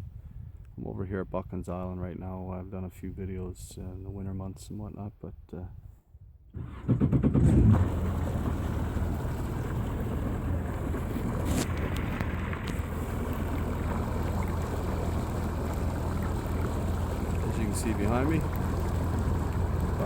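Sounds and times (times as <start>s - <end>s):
boat motor humming: 6.6s - 20.0s.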